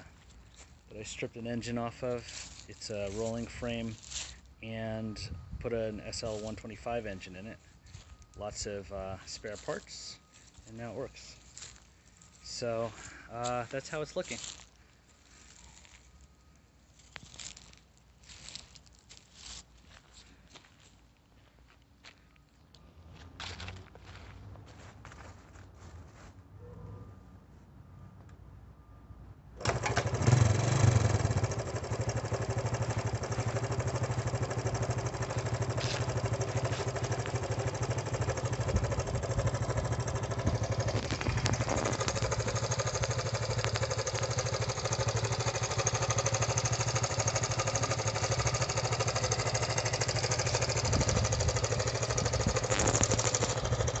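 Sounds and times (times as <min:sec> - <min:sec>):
motorcycle engine idling: 0:29.6 - 0:54.0.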